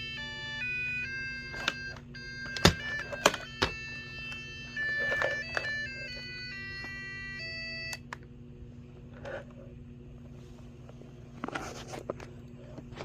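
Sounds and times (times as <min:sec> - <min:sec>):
alarm clock beeping melody: 0:00.0 - 0:08.0.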